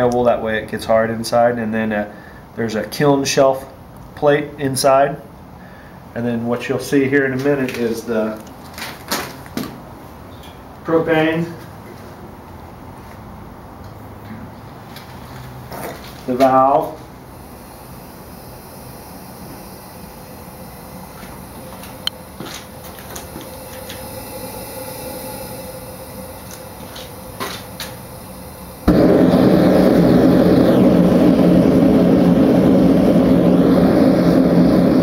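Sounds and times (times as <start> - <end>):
gas hissing: 15.0 - 35.0
burner roaring: 16.2 - 35.0
igniter clicks and pops: 19.1 - 35.0.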